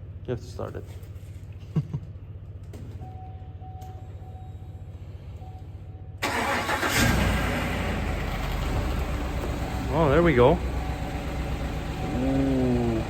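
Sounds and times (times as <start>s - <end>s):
truck engine starting and running: 6.2s - 13.0s
low steady rumble: 7.0s - 13.0s
faint beeping tone: 11.9s - 13.0s.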